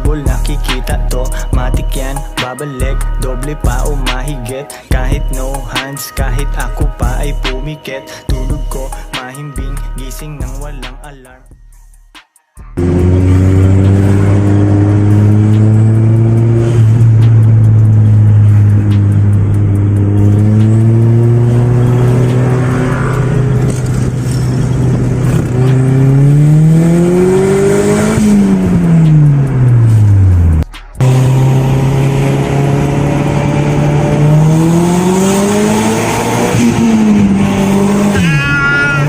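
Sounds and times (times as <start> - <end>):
car engine revving: 12.8 - 39.0.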